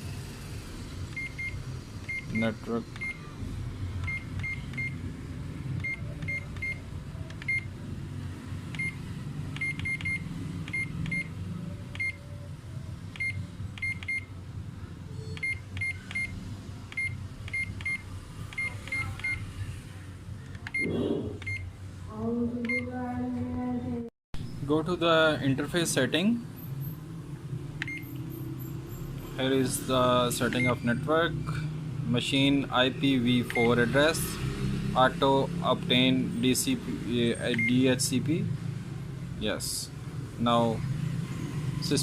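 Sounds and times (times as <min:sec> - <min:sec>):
control panel key beeps: 0:03.0 - 0:03.2, 0:04.0 - 0:05.0, 0:05.8 - 0:06.8, 0:07.4 - 0:07.7, 0:08.8 - 0:09.0, 0:09.6 - 0:11.3, 0:11.9 - 0:12.2, 0:13.2 - 0:14.3, 0:15.3 - 0:16.3, 0:16.9 - 0:19.4, 0:20.7 - 0:21.6, 0:27.8 - 0:28.1, 0:37.6 - 0:37.8.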